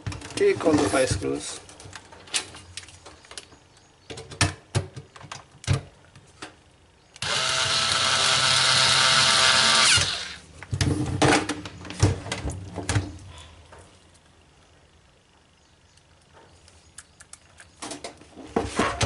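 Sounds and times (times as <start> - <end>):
electric screwdriver running: 7.2 - 10.4.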